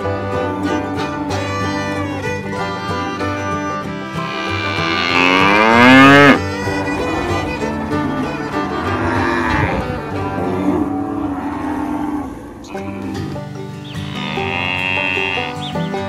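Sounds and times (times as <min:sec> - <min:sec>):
string music: 0:00.0 - 0:16.0
cow mooing: 0:04.0 - 0:13.0, 0:13.9 - 0:15.6.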